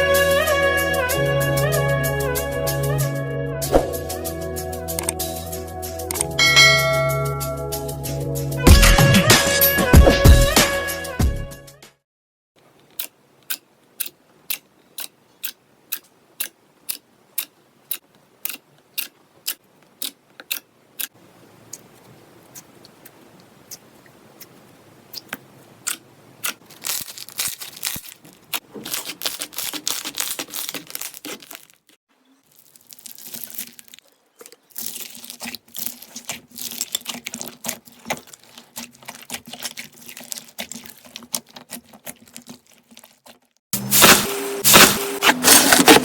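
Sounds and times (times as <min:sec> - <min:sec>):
slime crackling and crinkling: 0:25.8 - 0:43.6.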